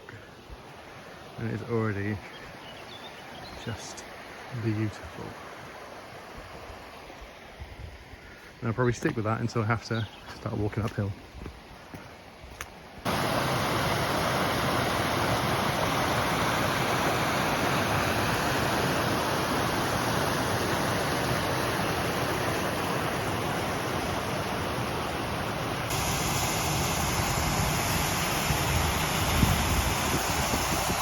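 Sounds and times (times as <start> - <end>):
rushing water: 0.0 - 31.0.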